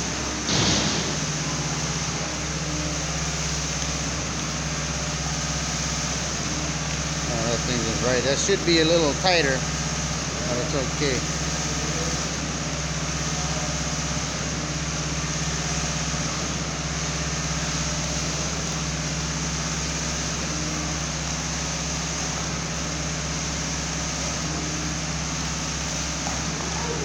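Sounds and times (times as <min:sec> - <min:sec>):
pump engine droning: 0:00.0 - 0:27.0.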